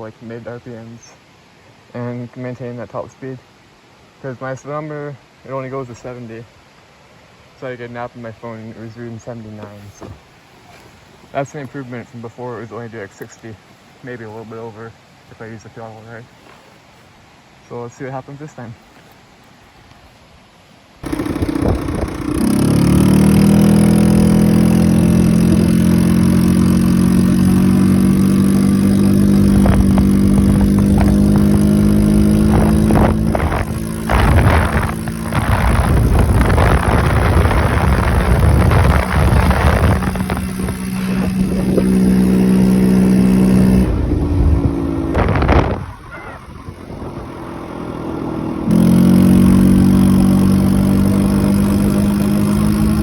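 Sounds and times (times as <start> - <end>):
scooter engine at high revs: 21.0 - 53.0
wind on microphone: 21.0 - 53.0.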